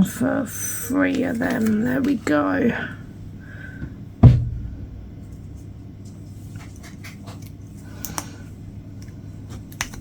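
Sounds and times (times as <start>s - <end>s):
dull heavy thump: 4.2s - 5.4s.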